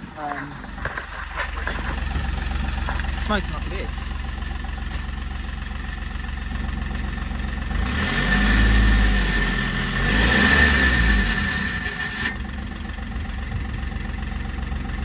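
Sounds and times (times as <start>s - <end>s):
car engine idling and revving: 0.0s - 15.0s
turbocharger whine: 6.5s - 15.0s.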